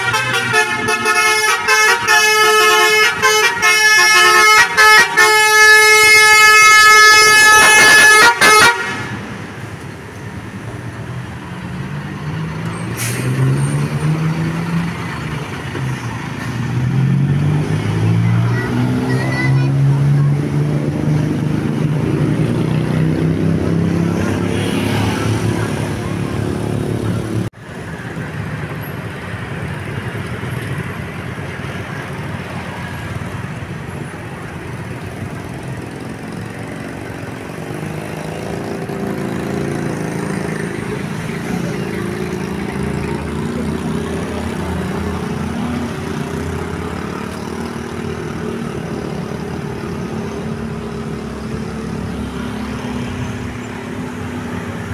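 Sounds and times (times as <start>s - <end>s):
road traffic noise: 0.0s - 54.9s
bus engine running: 25.2s - 54.9s.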